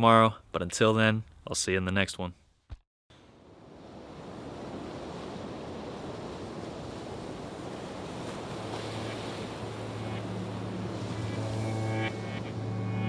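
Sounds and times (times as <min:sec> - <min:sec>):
steady rushing noise: 0:09.0 - 0:13.0.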